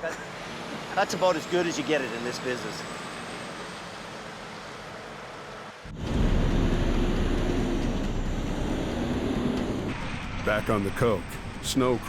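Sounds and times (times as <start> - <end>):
heavy vehicle engine rumbling: 5.8 - 12.0.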